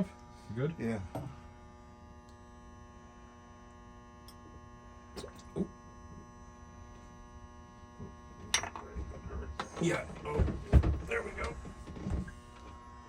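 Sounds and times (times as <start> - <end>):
steady electrical hum: 0.0 - 13.0.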